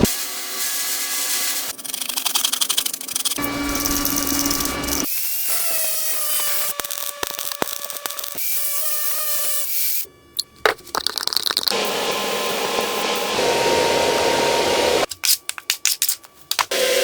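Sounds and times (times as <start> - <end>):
power tool whining: 3.4 - 5.1, 11.8 - 15.1.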